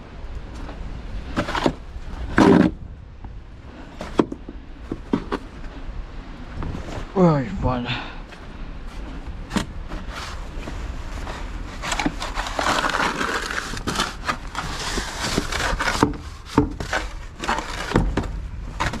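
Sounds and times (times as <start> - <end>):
crunching and scraping in snow: 6.7 - 19.0.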